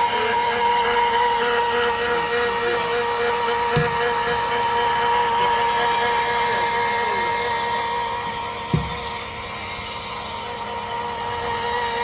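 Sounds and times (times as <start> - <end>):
stone polisher motor whine: 0.0 - 12.0
short knock: 8.7 - 9.1.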